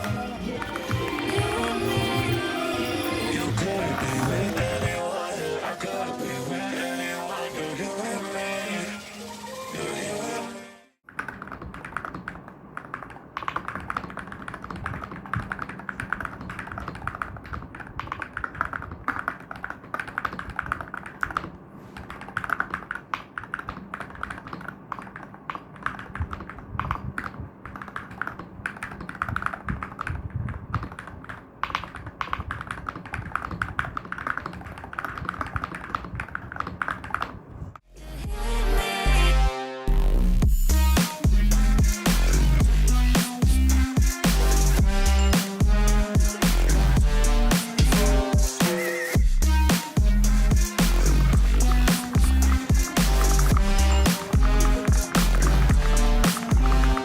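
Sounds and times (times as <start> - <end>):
muted keyboard keystroke clacks: 11.1 - 37.6, 49.8 - 57.0.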